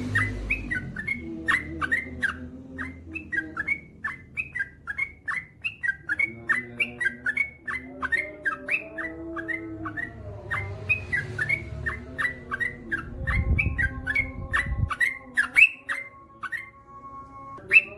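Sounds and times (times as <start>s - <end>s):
bulbul singing whistled notes: 0.0s - 17.9s
low rumble: 10.1s - 15.0s.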